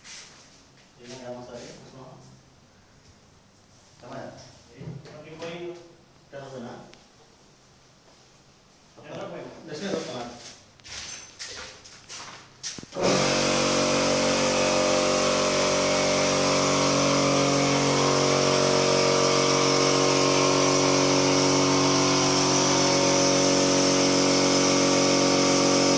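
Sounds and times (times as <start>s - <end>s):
power tool motor humming: 13.0s - 25.9s.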